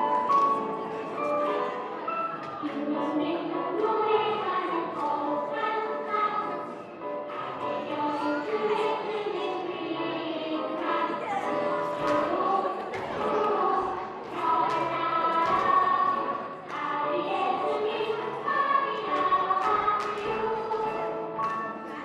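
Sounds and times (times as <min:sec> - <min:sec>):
children's choir singing: 0:00.0 - 0:22.0.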